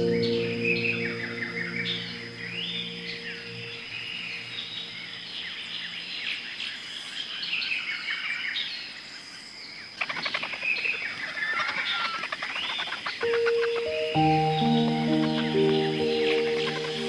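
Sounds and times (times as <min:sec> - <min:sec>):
small birds chirping: 0:00.0 - 0:17.0
chattering bird calls with clicks: 0:10.0 - 0:14.0.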